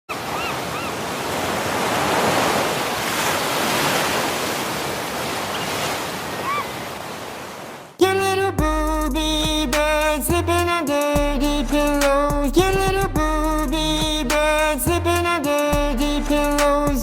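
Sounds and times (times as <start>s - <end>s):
bird call: 0.1s - 1.0s, 6.4s - 6.8s
ocean surf washing: 0.1s - 8.0s.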